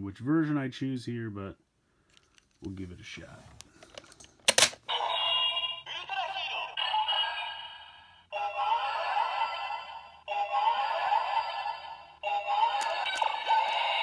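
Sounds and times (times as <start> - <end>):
toy speaker electronic voice and music: 4.9 - 14.0.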